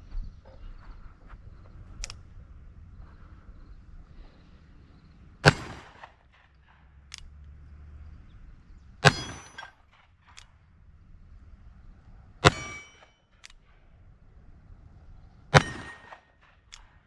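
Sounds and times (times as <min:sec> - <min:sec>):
revolver shots: 0:05.4 - 0:06.3, 0:15.5 - 0:16.3.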